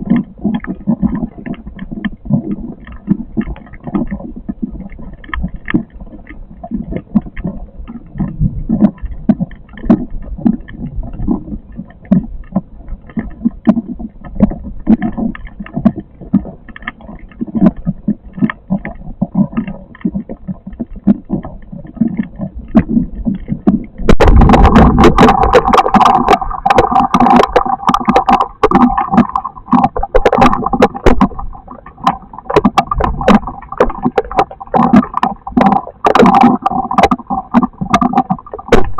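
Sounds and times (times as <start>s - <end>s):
raindrop ticks: 0.0s - 38.9s
wind gusting over microphone: 24.1s - 26.8s.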